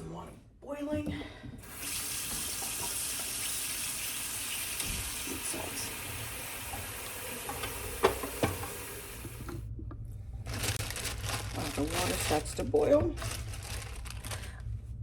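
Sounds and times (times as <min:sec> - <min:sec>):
tap water running into pot: 0:01.6 - 0:09.6.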